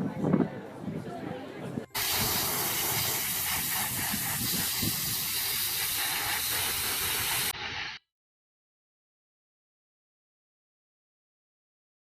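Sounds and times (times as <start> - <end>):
loud steady hiss: 2.0 - 8.0.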